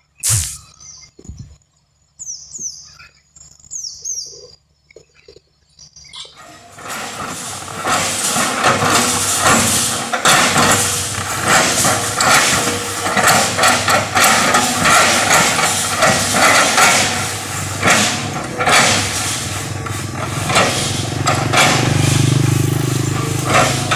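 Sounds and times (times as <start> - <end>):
hydraulic hiss: 0.0 - 0.7
excavator diesel engine: 6.3 - 23.9
mechanical knocks: 6.9 - 22.6.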